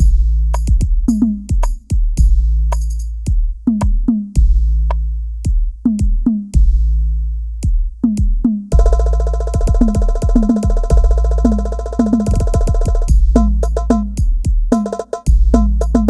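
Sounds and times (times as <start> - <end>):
deep booming bass drum: 0.0 - 16.0
quick drum strikes dropping in pitch: 8.2 - 16.0.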